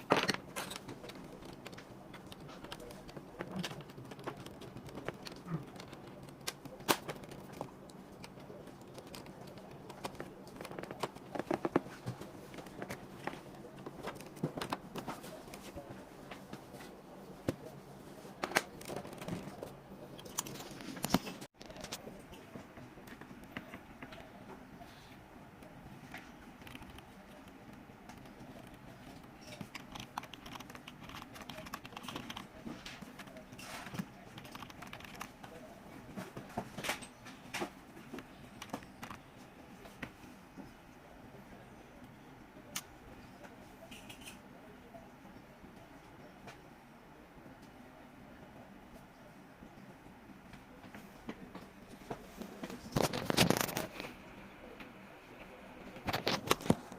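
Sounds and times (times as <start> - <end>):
hands clicking computer parts: 0.0 - 15.8, 26.1 - 35.6.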